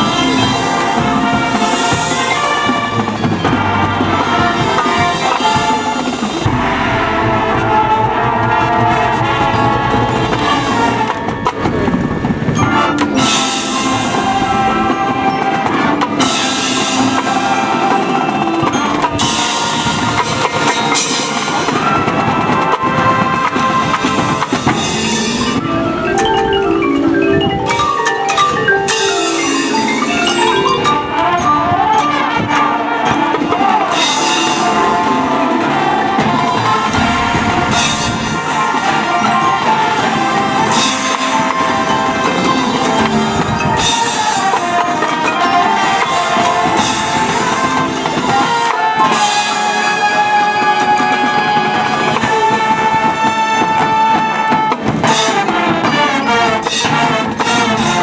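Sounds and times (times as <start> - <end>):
mallet percussion runs: 0.0 - 58.0
marching band music: 0.0 - 58.0
loud cymbal crashes: 5.0 - 11.1, 36.8 - 39.7.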